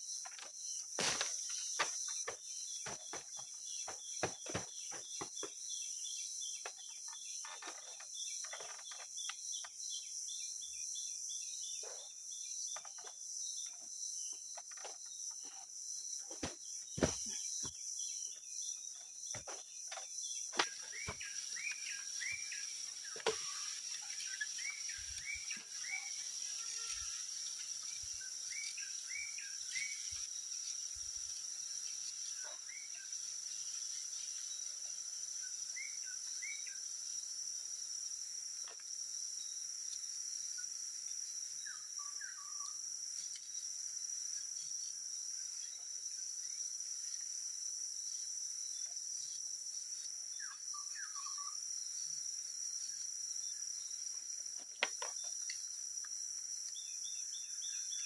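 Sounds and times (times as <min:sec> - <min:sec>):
high-pitched insect drone: 0:19.3 - 0:58.0.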